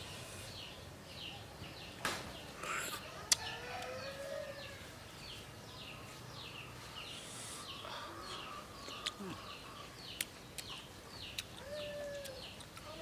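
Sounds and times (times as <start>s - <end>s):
bird chirping: 4.0s - 12.9s.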